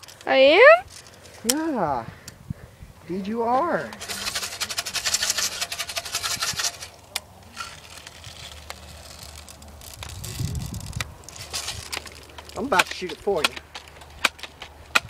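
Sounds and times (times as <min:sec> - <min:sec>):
rattle of small clicks: 0:03.9 - 0:15.0.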